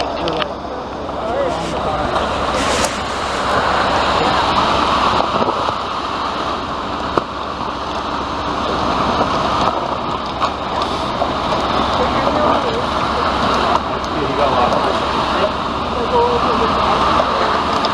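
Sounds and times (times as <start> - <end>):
truck engine running: 0.0 - 17.9
wet concrete sliding down chute: 1.2 - 5.2.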